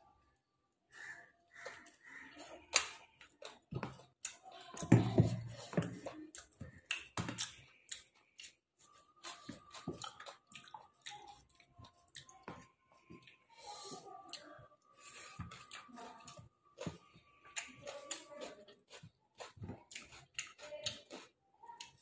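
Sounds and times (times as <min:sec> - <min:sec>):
person chewing with mouth smacks: 0:01.5 - 0:22.0.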